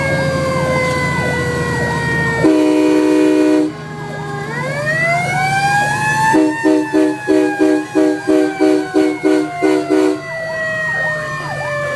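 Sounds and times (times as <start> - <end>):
falling and rising siren: 0.0 - 11.9
fast wavering siren: 0.0 - 11.9
fire truck air horn blasts: 1.8 - 3.8, 6.2 - 10.5.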